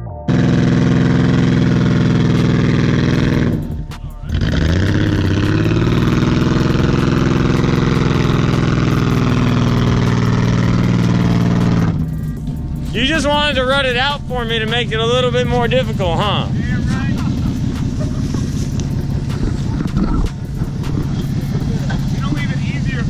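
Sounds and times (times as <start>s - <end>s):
off-road vehicle engine revving: 0.3s - 23.0s
scattered clicks: 17.1s - 22.5s.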